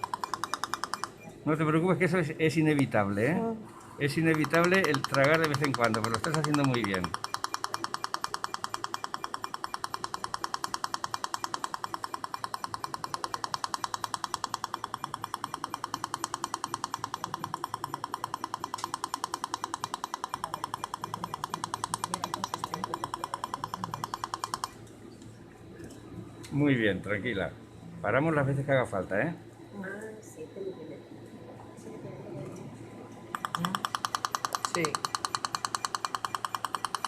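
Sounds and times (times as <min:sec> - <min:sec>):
laser handpiece rapid clicks: 0:00.0 - 0:01.2, 0:04.1 - 0:24.8, 0:33.3 - 0:37.0.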